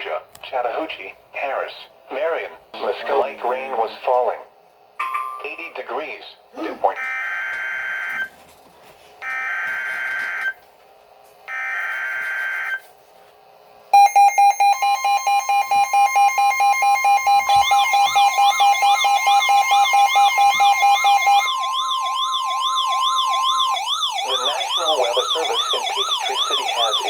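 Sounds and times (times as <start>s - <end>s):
pulsing alarm beep: 14.0s - 27.0s
steady high tone: 14.0s - 27.0s.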